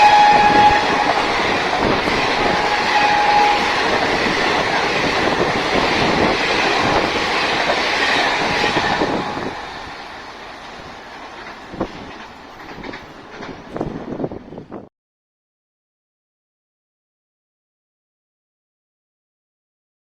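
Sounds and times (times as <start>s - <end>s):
train horn: 0.0s - 7.1s, 7.9s - 10.1s
train rushing past: 0.0s - 14.9s
wheels clacking over rail joints: 0.0s - 14.9s.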